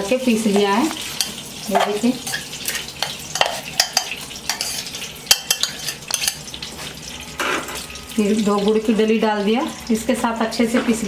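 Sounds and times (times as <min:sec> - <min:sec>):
ghee sizzling: 0:00.0 - 0:11.0
spoon scraping and knocking in pan: 0:00.5 - 0:06.5.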